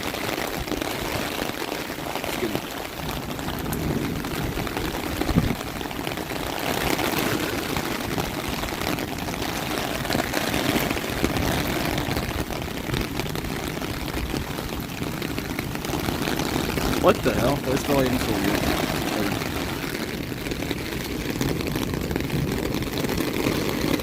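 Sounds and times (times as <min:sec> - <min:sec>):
rain hissing: 0:00.0 - 0:24.0
wind buffeting microphone: 0:00.0 - 0:24.0.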